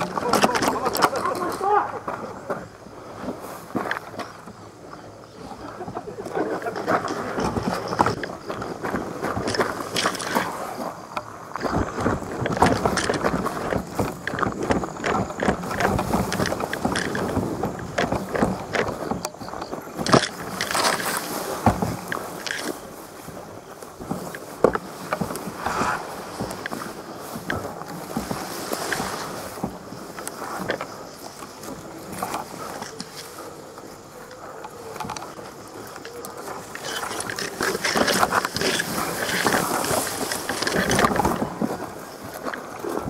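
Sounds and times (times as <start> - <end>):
handling noise rustling: 0.0 - 5.0, 5.6 - 43.0.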